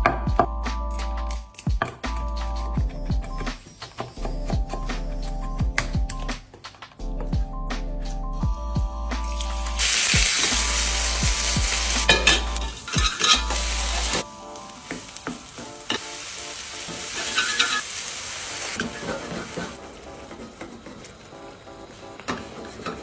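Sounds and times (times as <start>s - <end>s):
background music: 0.0s - 23.0s
chicken sizzling in hot oil: 9.2s - 23.0s.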